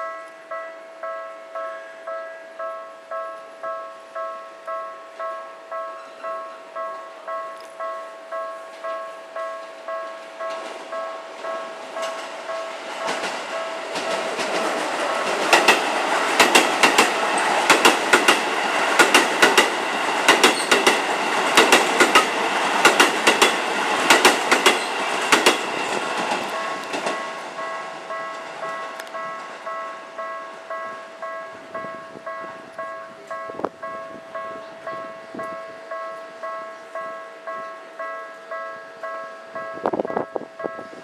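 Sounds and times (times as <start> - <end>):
train wheels clattering over joints: 12.0 - 27.4.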